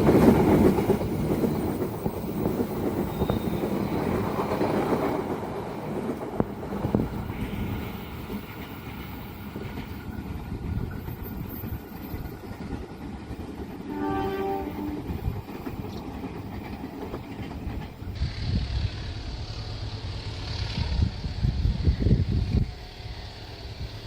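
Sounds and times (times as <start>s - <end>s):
train rumbling past: 0.0s - 24.0s
train horn blast: 13.9s - 15.2s.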